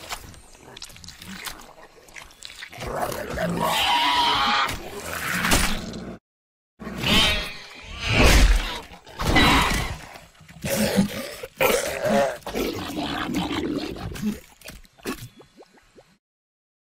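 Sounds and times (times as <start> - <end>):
cartoon creature roaring growls: 10.6 - 13.9.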